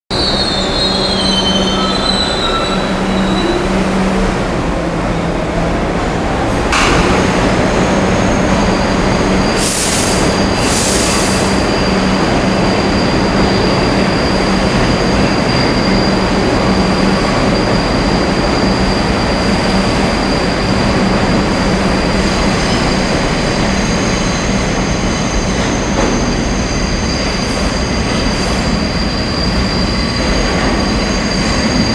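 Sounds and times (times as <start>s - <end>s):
subway train rumbling: 0.1s - 31.9s
sharp knock: 6.7s - 7.5s
short air hisses: 9.6s - 11.8s.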